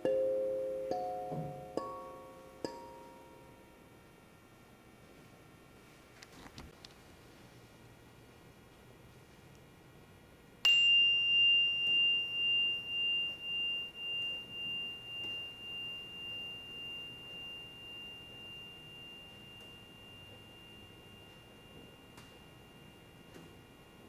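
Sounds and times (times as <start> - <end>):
bell strike ringing: 0.0 - 3.8, 10.7 - 24.0.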